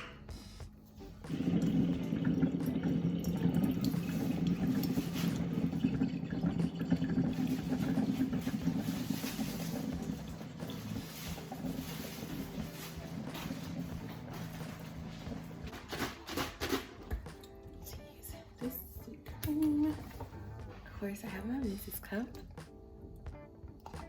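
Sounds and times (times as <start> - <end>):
liquid pouring into container: 1.3 - 15.7.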